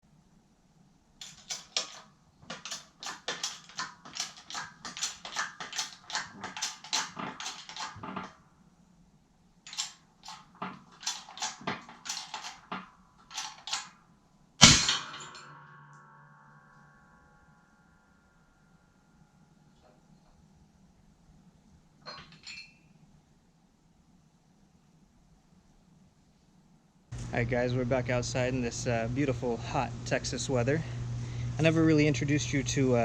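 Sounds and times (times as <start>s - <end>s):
loud ringing impact: 14.6s - 19.5s.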